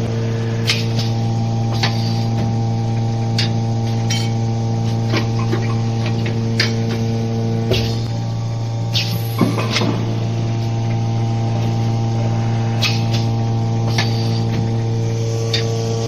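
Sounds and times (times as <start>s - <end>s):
machine humming: 0.0s - 16.0s.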